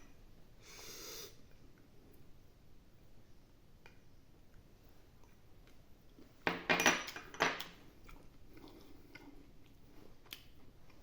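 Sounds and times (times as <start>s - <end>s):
tableware clattering: 6.4s - 7.7s.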